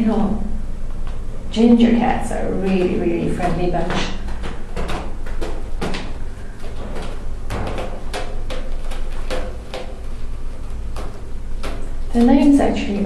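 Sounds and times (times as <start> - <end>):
kittens knocking and rustling: 2.5 - 12.7.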